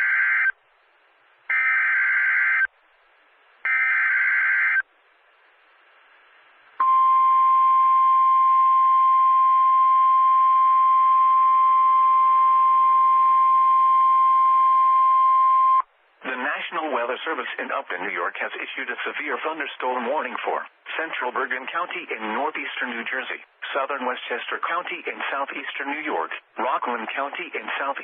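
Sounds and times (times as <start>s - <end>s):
steady single-pitch warning alarm tone: 1.5s - 2.7s, 3.7s - 4.8s, 6.8s - 15.8s.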